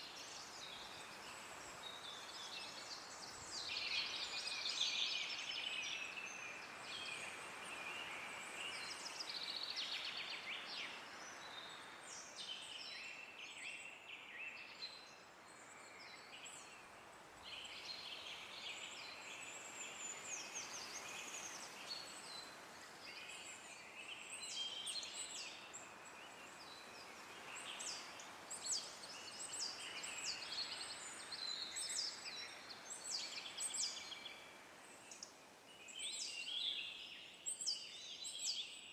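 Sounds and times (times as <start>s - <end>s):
wind through trees: 0.0s - 38.9s.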